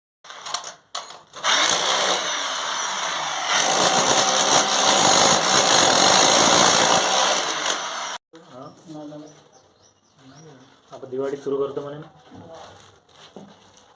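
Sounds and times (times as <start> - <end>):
power tool whining: 1.4 - 8.2.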